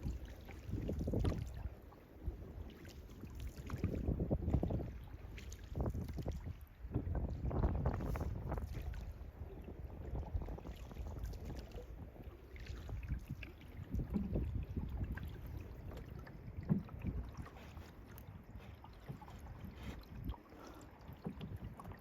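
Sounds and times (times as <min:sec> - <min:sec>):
paddles dipping in water: 0:00.0 - 0:22.0
wind rumble on microphone: 0:00.0 - 0:22.0.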